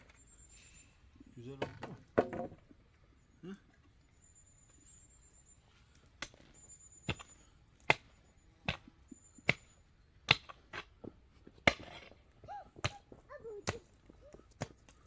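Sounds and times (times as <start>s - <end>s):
hand tool striking hard material: 10.3s - 10.9s.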